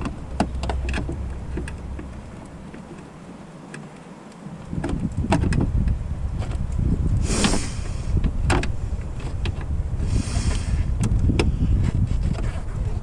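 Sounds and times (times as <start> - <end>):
low rumble: 0.0 - 3.5
hand tools and plastic clicking: 0.0 - 13.0.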